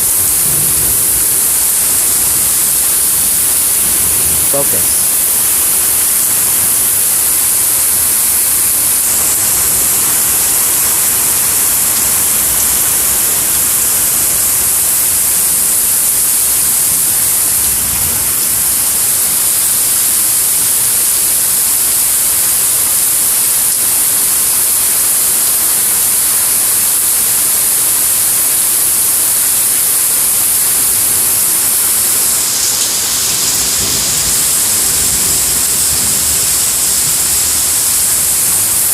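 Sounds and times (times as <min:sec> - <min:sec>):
heavy rain pouring: 0:00.0 - 0:38.9.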